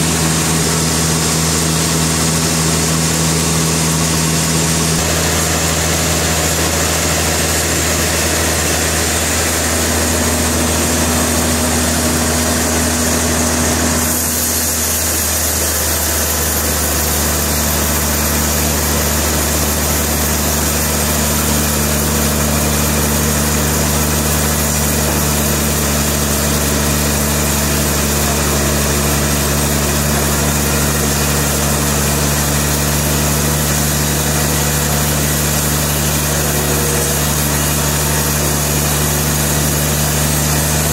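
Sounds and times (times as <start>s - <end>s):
large engine running: 0.0s - 40.9s.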